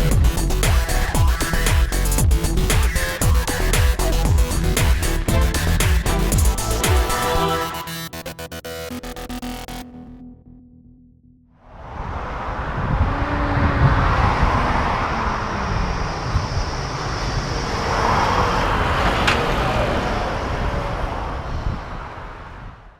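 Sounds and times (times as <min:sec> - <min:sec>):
heavy diesel engine rumble: 0:00.0 - 0:07.8.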